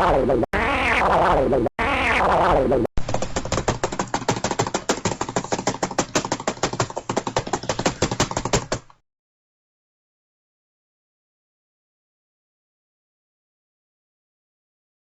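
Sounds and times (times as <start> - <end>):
rapid clicking taps: 3.0 - 9.0.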